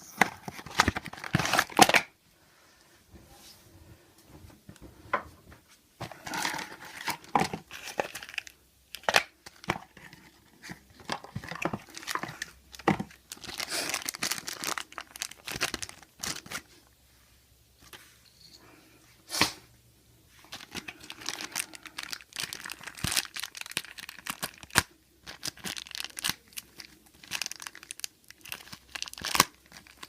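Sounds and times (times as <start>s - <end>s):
wrapping crinkling and tearing: 0.2s - 2.1s, 6.1s - 16.7s, 20.4s - 30.0s
plastic parts clicking and knocking: 6.0s - 13.5s.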